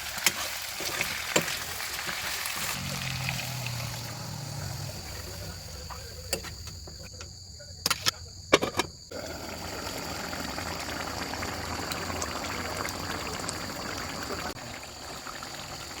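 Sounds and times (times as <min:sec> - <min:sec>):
curry bubbling in a pot: 0:09.1 - 0:16.0.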